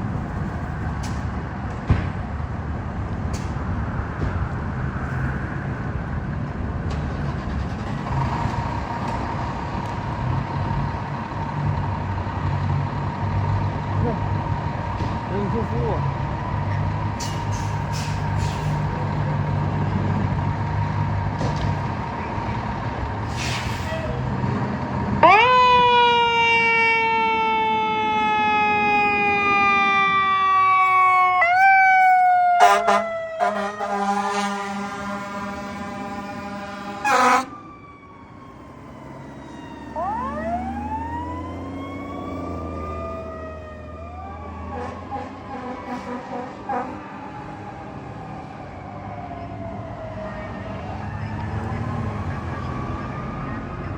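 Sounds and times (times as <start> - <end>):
diesel engine rumbling: 0.0 - 53.9
sirens wailing: 6.8 - 53.9
fire truck horn: 25.2 - 37.6, 44.6 - 47.4.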